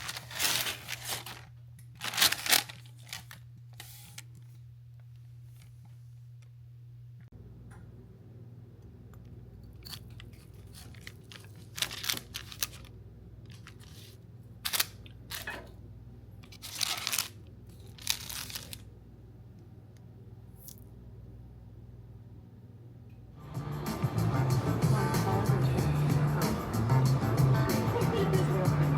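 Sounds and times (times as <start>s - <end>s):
packaging crinkling and tearing: 0.0s - 4.6s, 9.9s - 15.5s, 16.4s - 18.9s
steady low hum: 0.0s - 28.9s.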